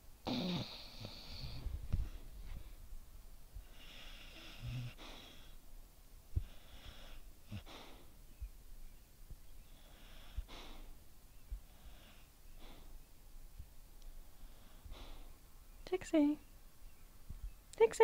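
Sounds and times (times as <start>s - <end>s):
puppy snoring: 0.2s - 1.7s, 3.6s - 5.6s, 6.4s - 8.1s.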